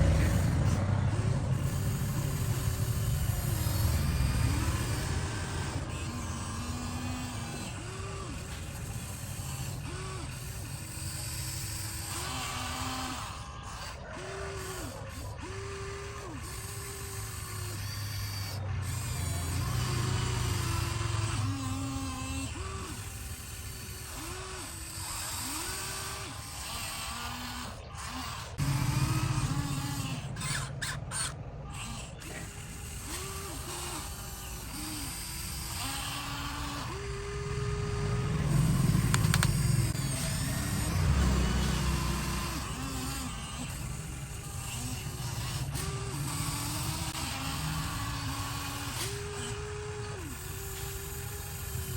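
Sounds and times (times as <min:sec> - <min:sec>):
steady low rumble: 0:00.0 - 0:06.6, 0:37.0 - 0:44.5
toy excavator motors whining: 0:00.0 - 0:51.9.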